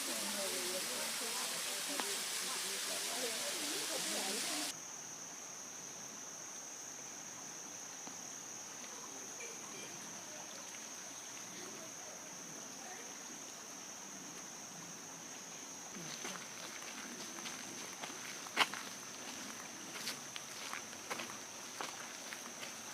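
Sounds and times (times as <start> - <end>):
insects chirring: 0.0 - 22.9
soft even hiss: 0.0 - 22.9.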